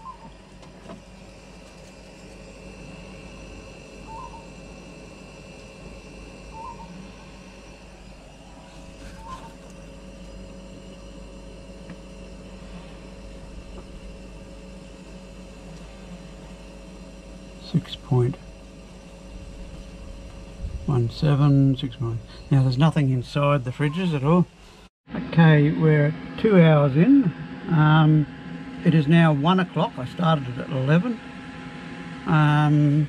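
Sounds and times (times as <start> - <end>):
bird calls: 0.0 - 0.4, 4.0 - 4.6, 6.5 - 7.1, 9.0 - 10.0, 23.7 - 24.3
fridge compressor hum: 0.0 - 33.0.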